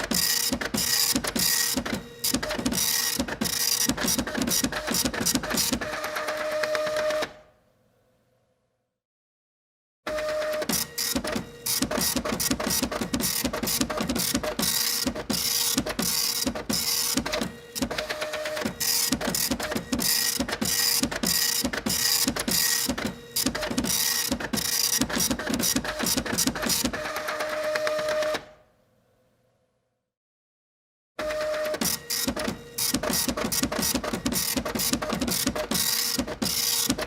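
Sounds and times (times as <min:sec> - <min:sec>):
printer mechanism clattering: 0:10.5 - 0:27.9, 0:31.4 - 0:37.0.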